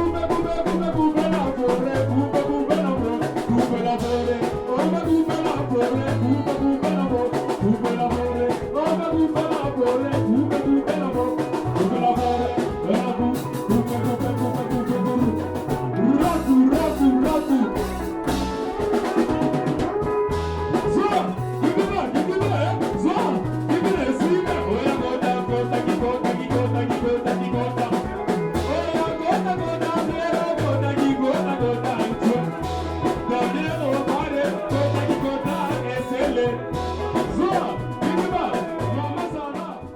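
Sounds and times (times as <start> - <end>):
upbeat dance music with brass: 13.7 - 22.8.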